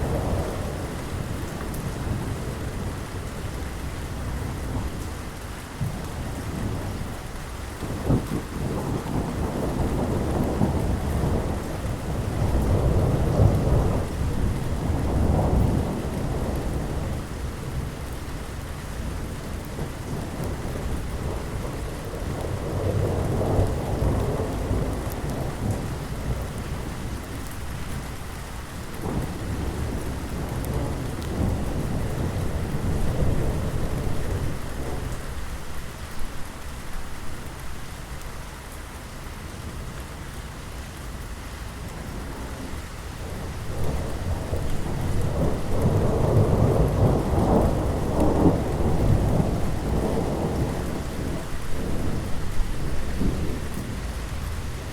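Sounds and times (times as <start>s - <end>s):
steady rain: 0.0s - 54.9s
rolling thunder: 7.8s - 17.9s, 19.7s - 28.2s, 28.9s - 36.4s, 41.8s - 54.9s.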